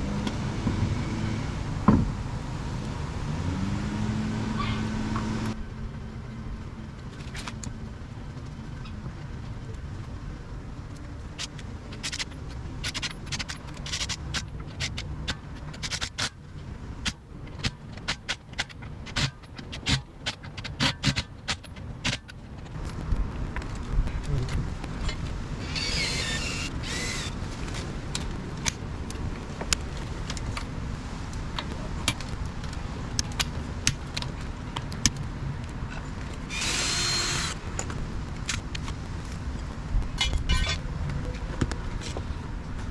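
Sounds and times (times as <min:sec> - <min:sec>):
rasping burst: 0:23.8 - 0:28.0, 0:36.5 - 0:37.8.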